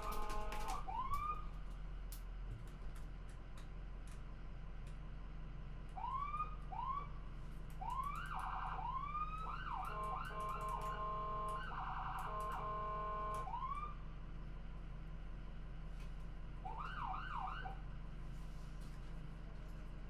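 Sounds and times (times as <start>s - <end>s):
electronic siren: 6.0s - 7.1s, 7.8s - 14.0s, 16.7s - 17.8s.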